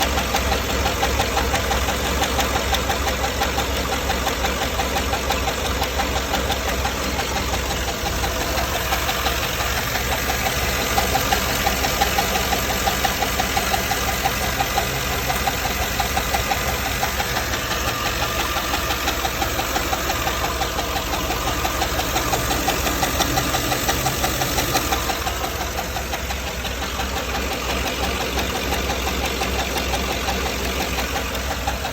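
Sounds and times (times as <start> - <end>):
engine running: 0.0 - 31.9.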